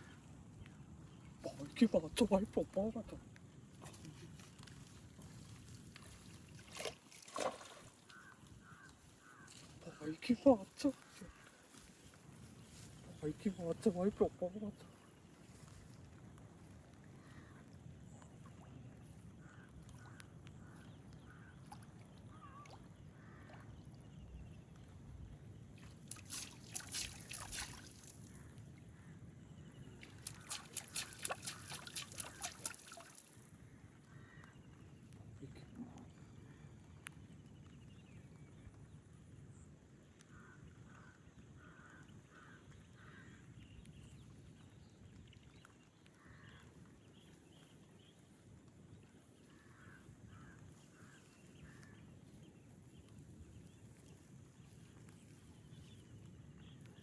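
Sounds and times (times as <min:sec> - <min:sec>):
faint bird calls: 0:06.1 - 0:15.9, 0:17.0 - 0:24.6, 0:26.4 - 0:38.7, 0:39.5 - 0:44.2, 0:45.4 - 0:48.2, 0:49.0 - 0:57.0.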